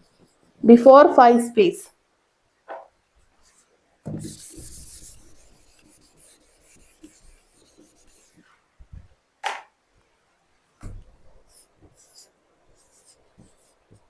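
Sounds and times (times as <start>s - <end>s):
pen scratching on paper: 3.5s - 8.4s, 11.4s - 14.0s.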